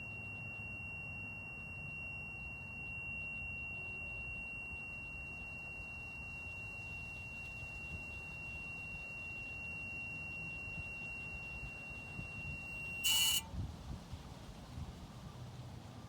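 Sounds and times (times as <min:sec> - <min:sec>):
high-pitched metallic whine: 0:00.0 - 0:13.5.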